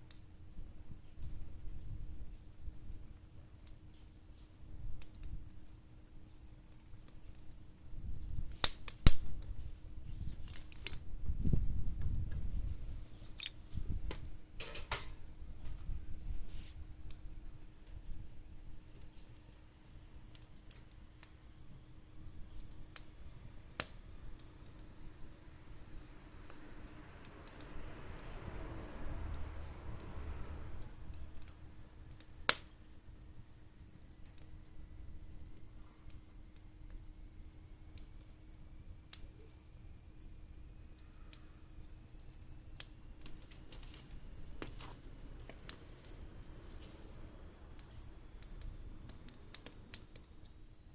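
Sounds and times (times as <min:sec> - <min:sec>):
firewood crackling and popping: 0:00.0 - 0:50.9
soft rush of noise: 0:08.0 - 0:50.9.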